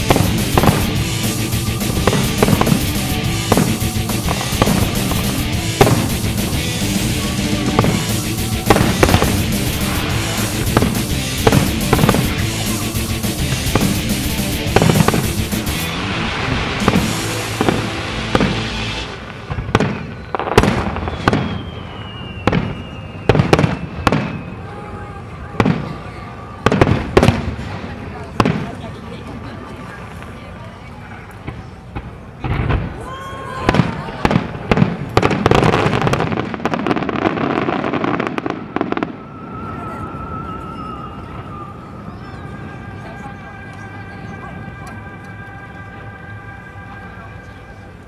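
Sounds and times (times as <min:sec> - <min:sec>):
firework shell bursts echoing: 0:00.0 - 0:16.1
fireworks crackling: 0:00.0 - 0:47.1
thin wavering tone: 0:39.2 - 0:48.0.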